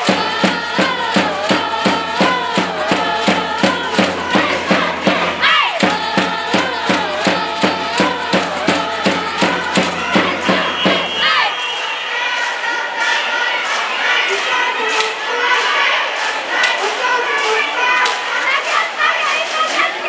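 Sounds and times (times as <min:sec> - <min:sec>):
rapid drum beat: 0:00.0 - 0:11.4
crowd chanting in unison: 0:00.0 - 0:20.0.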